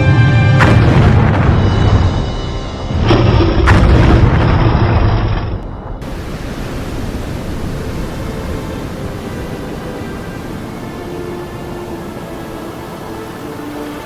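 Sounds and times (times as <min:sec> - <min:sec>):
deep loud rumble: 0:00.6 - 0:13.0
steady hiss: 0:06.0 - 0:14.0.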